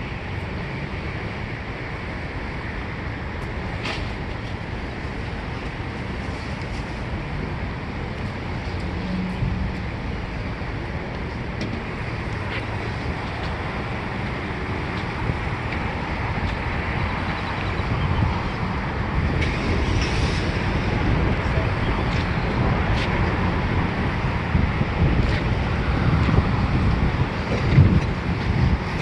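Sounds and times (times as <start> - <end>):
traffic noise: 0.0 - 29.0
wind on microphone: 0.0 - 29.0.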